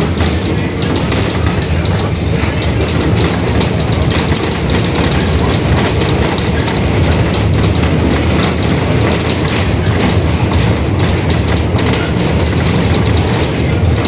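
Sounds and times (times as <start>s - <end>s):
body and fittings rattling: 0.0s - 14.0s
bus diesel engine drone: 0.0s - 14.0s.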